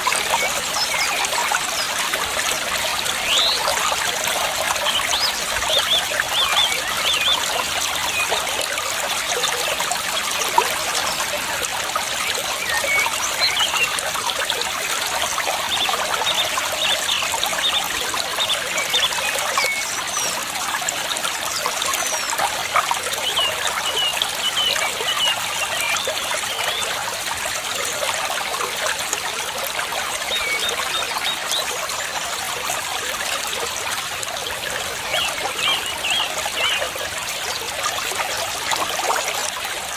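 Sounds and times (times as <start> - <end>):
water trickling: 0.0 - 39.9.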